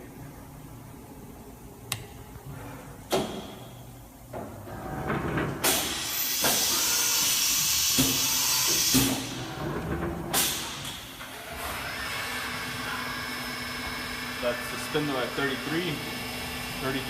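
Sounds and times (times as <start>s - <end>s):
air hissing: 5.7s - 9.4s.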